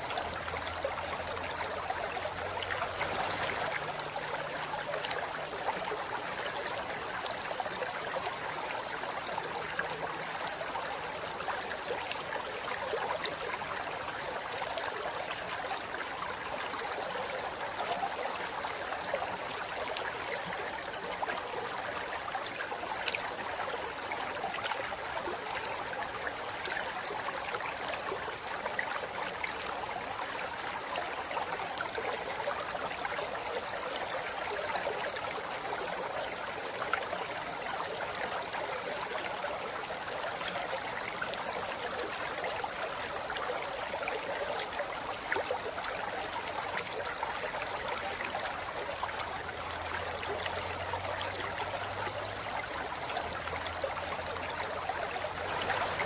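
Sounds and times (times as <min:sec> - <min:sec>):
small water splashes: 0:00.0 - 0:28.4, 0:31.2 - 0:56.0
river rushing over rocks: 0:02.8 - 0:04.0.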